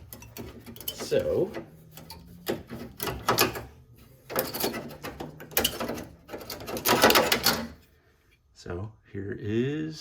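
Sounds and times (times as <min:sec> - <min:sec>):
metal hood latch rattling: 0:00.0 - 0:07.8.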